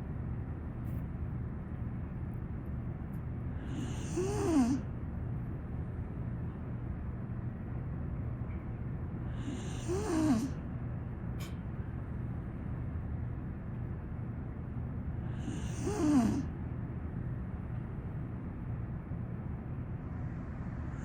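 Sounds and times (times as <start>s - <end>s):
steady low hum: 0.0s - 21.0s
dog snoring: 3.6s - 4.9s, 9.3s - 10.6s, 15.2s - 16.5s.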